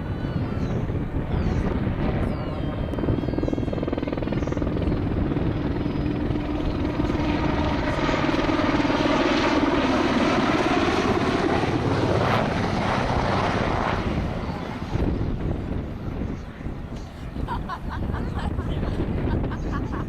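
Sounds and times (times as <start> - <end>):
helicopter engine whine: 0.0 - 20.0
helicopter rotor chop: 0.0 - 20.0.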